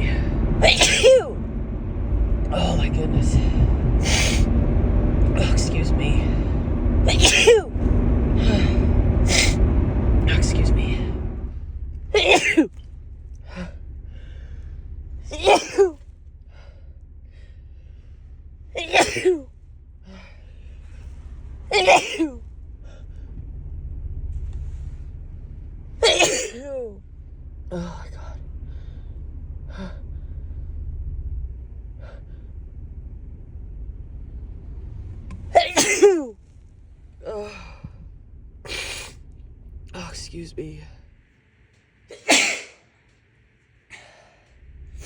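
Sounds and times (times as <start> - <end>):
low rumble: 0.0 - 45.0
woman sneezing: 12.2 - 12.7, 15.4 - 15.9, 18.8 - 19.4, 26.0 - 26.7, 42.1 - 42.8.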